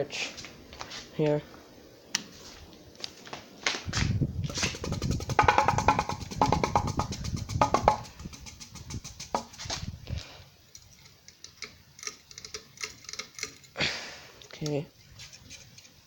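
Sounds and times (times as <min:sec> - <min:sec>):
ceiling fan clicking and rattling: 0:02.9 - 0:13.8.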